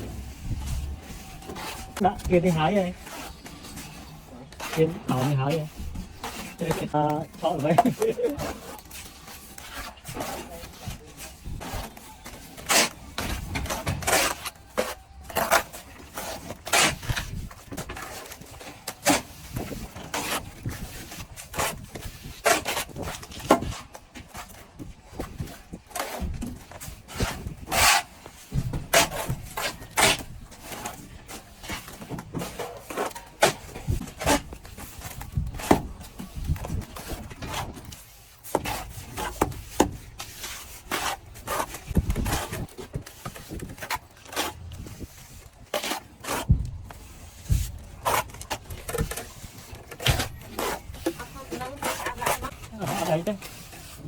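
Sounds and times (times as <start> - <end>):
plaster rubbing: 0.0 - 54.0
plastering tools scraping: 0.0 - 54.0.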